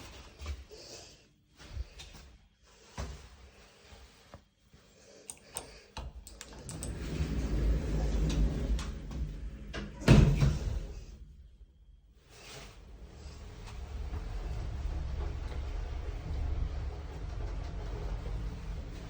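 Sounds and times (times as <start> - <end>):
lift running rumble and hum: 6.0 - 19.0.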